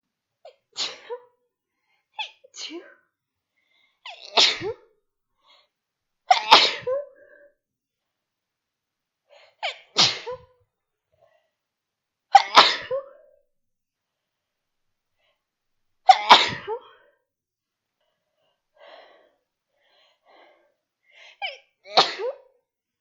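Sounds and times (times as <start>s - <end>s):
woman sneezing: 0.5s - 1.3s, 4.1s - 4.8s, 6.3s - 7.2s, 9.6s - 10.5s, 12.4s - 13.2s, 16.1s - 17.0s, 21.4s - 22.5s.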